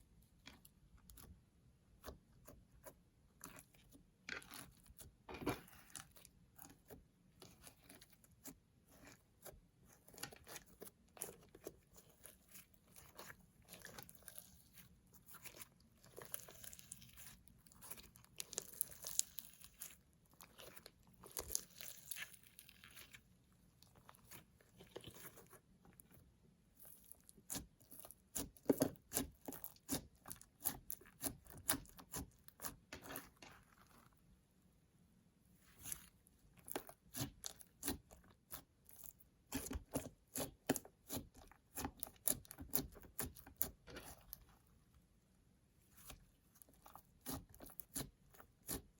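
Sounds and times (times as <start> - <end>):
slime squished by hand: 7.6 - 25.6.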